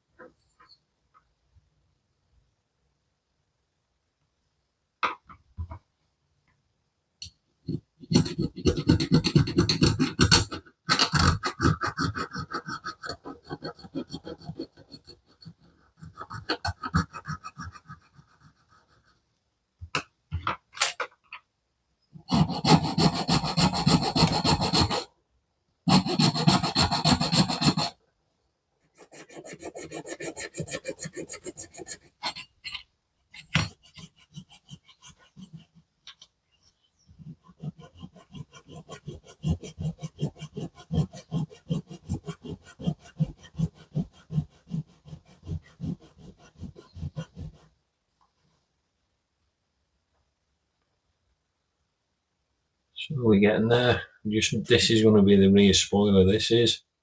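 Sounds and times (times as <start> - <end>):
file rasping on plastic: 7.7 - 19.1, 22.2 - 25.1, 25.9 - 28.0, 28.8 - 36.2, 37.0 - 47.8.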